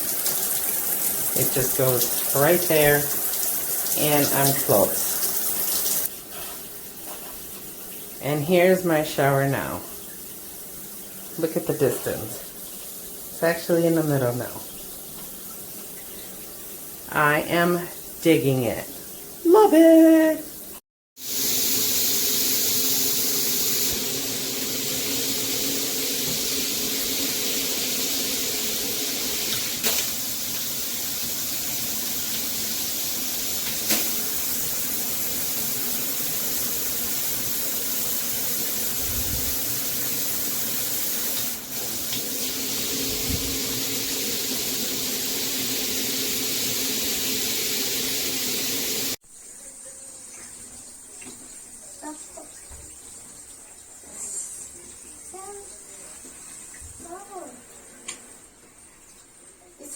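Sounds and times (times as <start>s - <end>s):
shower head spraying water: 0.0s - 6.6s, 21.2s - 49.2s.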